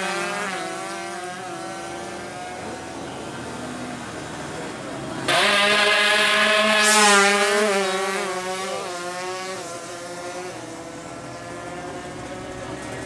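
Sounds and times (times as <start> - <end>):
motorcycle engine at full throttle: 0.0 - 13.0.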